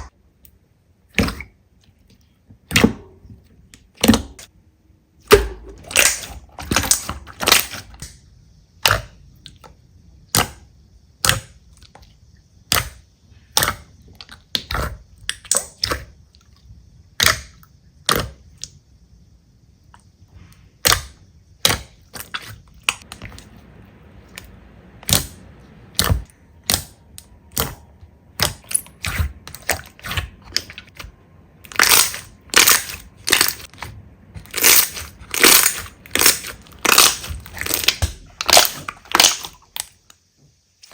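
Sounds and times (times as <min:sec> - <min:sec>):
slime squishing with pops: 0:05.3 - 0:08.2, 0:17.2 - 0:18.7, 0:24.3 - 0:40.1.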